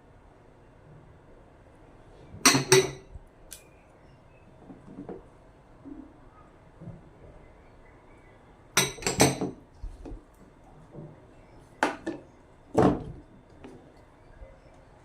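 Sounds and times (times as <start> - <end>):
dishes and utensils clattering: 2.4 - 3.1, 8.8 - 9.6.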